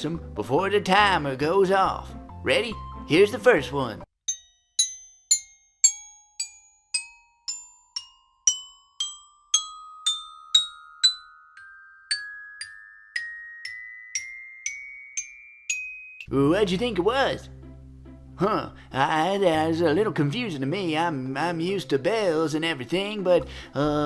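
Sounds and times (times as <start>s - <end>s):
xylophone notes climbing scale: 1.0s - 17.5s.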